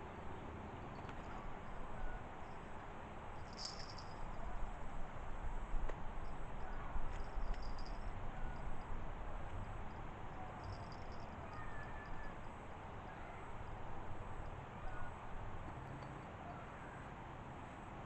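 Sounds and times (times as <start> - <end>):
steady rumbling hiss: 0.0 - 18.0
high ticking insect chirp: 2.0 - 4.5, 6.2 - 13.7
faint bird calls: 10.5 - 13.7.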